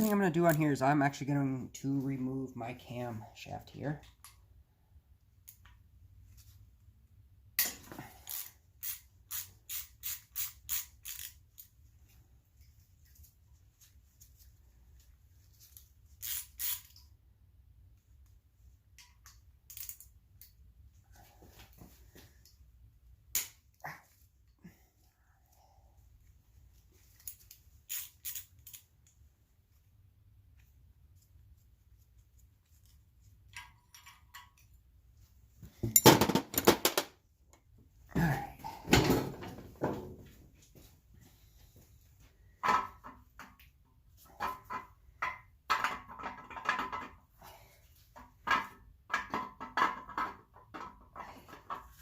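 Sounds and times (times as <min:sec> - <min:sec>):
metal tools and engine parts clanking: 0:33.5 - 0:34.7.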